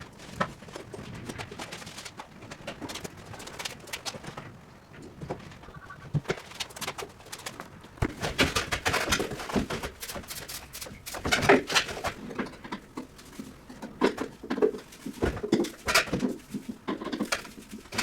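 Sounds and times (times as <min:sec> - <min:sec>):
knocks and clatter of boards: 0:05.2 - 0:18.0.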